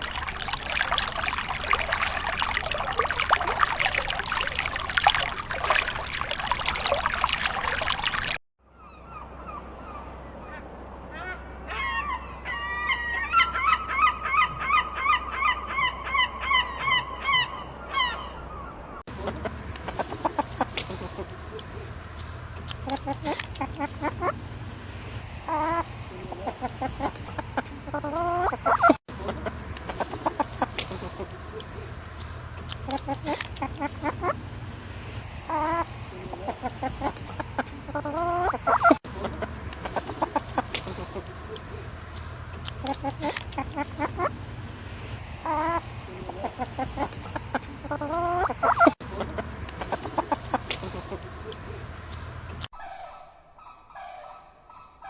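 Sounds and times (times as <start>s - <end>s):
chicken drawn-out calls: 52.8s - 55.0s.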